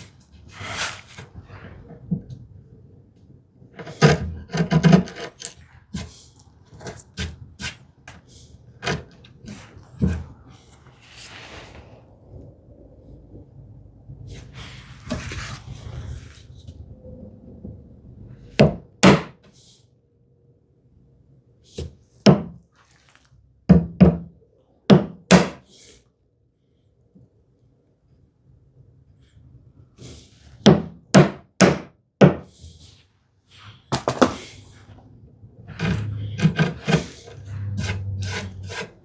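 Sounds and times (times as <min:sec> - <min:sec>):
scraping and handling noise: 0:00.0 - 0:02.6, 0:03.7 - 0:12.4, 0:14.3 - 0:16.9, 0:32.6 - 0:39.0.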